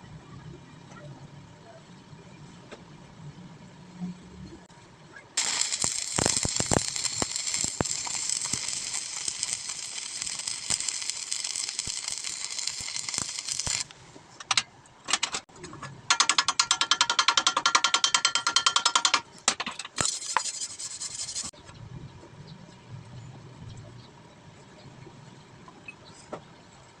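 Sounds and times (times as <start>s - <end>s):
fast regular clicking: 5.4s - 13.9s
welding arc hissing and crackling: 5.4s - 13.9s, 20.0s - 21.5s.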